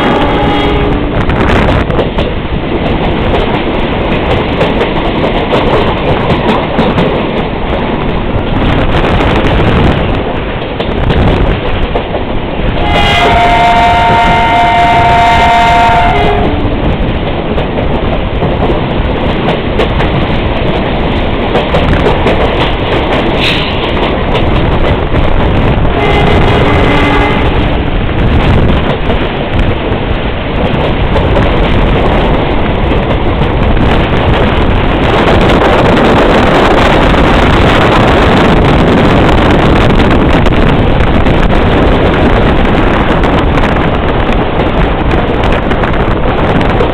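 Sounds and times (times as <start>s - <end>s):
train horn blasts: 0.0s - 1.5s, 12.7s - 16.9s, 25.9s - 27.8s
moving train running noise: 0.0s - 46.9s.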